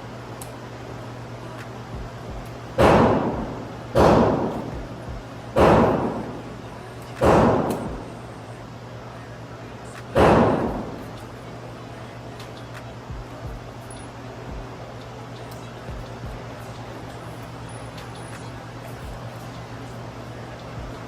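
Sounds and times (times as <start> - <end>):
gunshots with reverberation: 2.8 - 5.0, 5.6 - 6.6, 7.2 - 8.2, 10.2 - 11.2.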